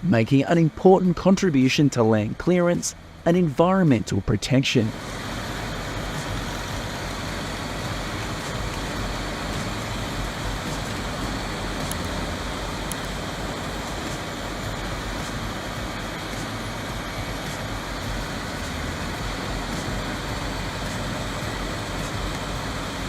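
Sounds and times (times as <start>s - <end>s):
wood-grinding machine running: 4.9s - 23.0s.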